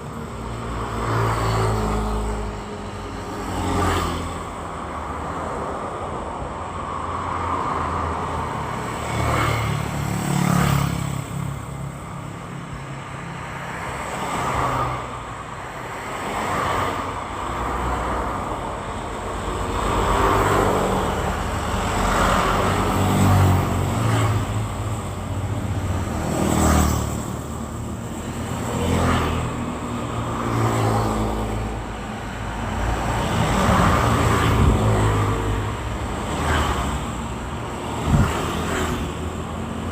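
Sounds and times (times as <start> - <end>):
cars and motorbikes passing: 0.0 - 39.9.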